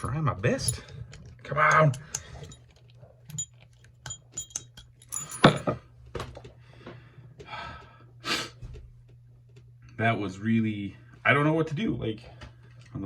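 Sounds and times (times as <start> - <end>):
metal puzzle clicking: 0.0 - 2.6
steady low hum: 0.0 - 11.4.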